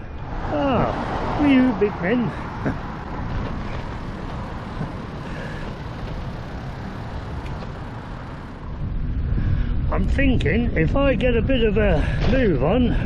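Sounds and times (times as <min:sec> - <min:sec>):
bicycle riding on road: 0:00.0 - 0:13.0
wind on microphone: 0:06.0 - 0:13.0.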